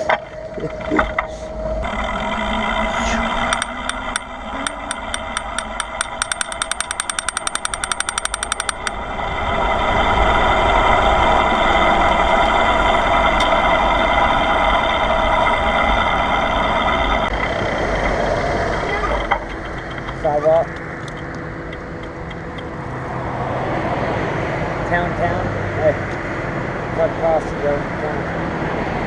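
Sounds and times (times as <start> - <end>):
bicycle ticking: 1.8 - 22.8.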